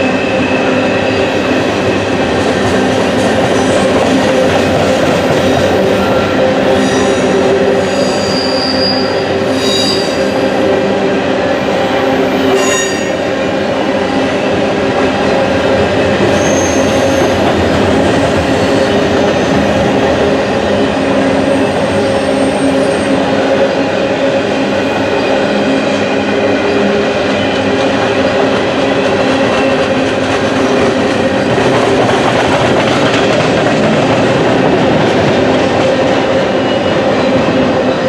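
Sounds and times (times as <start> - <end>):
freight train rolling past: 0.0 - 38.0
high-pitched wheel squeals: 6.0 - 10.4, 12.3 - 13.2, 16.3 - 17.4.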